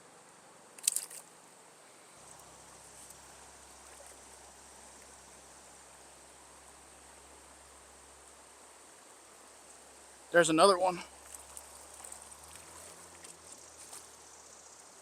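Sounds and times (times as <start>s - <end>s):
stream rushing: 2.1s - 15.0s
water splash: 2.2s - 5.1s, 11.0s - 14.2s.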